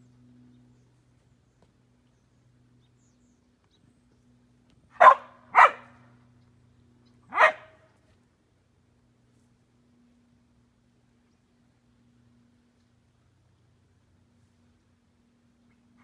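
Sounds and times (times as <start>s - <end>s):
dog barking: 5.0s - 6.0s, 7.3s - 7.8s.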